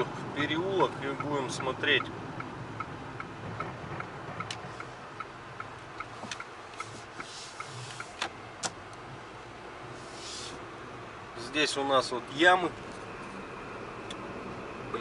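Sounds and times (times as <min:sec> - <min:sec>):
turn signal ticking: 0:00.0 - 0:09.9
road and engine noise: 0:00.0 - 0:15.0.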